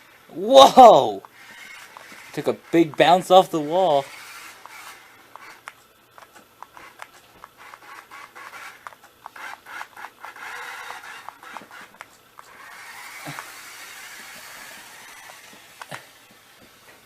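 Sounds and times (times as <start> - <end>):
toy car scraping across floor: 1.3 - 5.7, 6.3 - 16.2
small clicks and ticks: 4.5 - 12.6.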